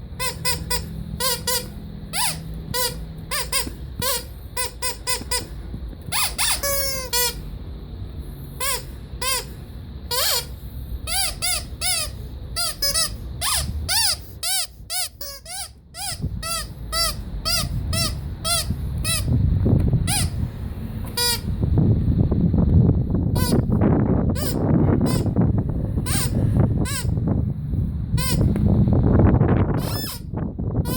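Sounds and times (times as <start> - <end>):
low rumbling noise: 0.0 - 30.9
rubber squeaky toy squeaks: 0.1 - 7.5, 8.6 - 19.4, 20.0 - 20.4, 21.0 - 21.5, 23.4 - 23.7, 24.3 - 25.4, 26.0 - 27.2, 28.1 - 28.6, 29.8 - 30.9.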